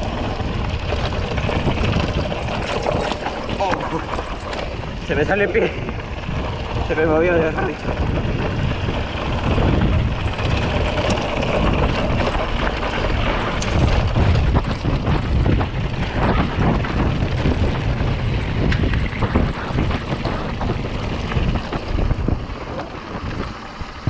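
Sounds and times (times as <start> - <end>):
mountain bike rattling on dirt trail: 0.0 - 24.0
wind buffeting microphone: 0.0 - 24.0.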